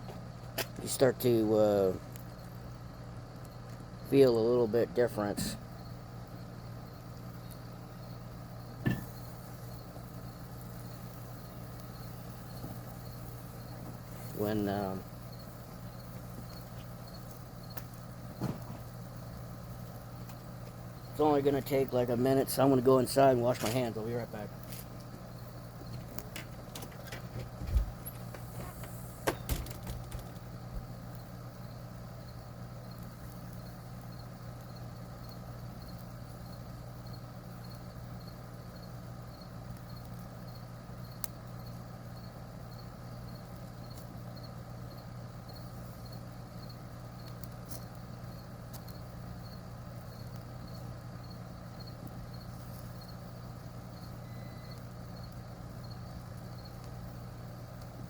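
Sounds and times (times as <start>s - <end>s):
low mechanical hum: 0.0s - 58.0s
sharp knocks and clatters: 8.8s - 9.2s, 25.9s - 30.4s
faint high ticking: 30.0s - 58.0s.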